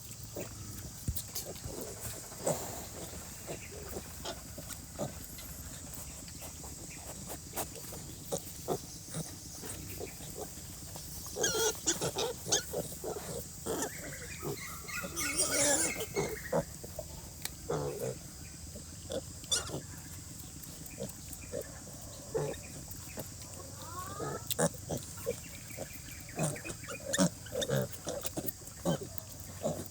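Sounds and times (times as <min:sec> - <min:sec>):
pigs grunting: 0:00.0 - 0:29.9
pig squealing: 0:11.4 - 0:16.7, 0:19.4 - 0:19.8, 0:23.8 - 0:29.0.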